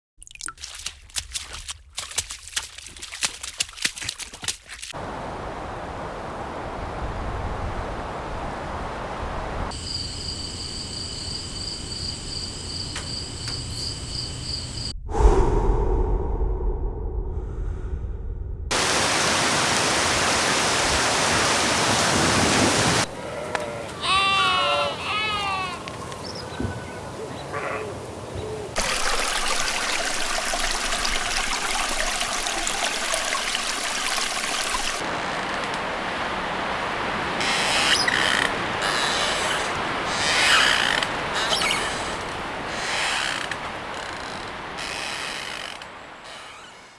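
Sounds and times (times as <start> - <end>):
stream flowing: 4.6 - 9.8, 18.7 - 23.2, 25.0 - 46.2
crickets chirring: 9.7 - 15.0.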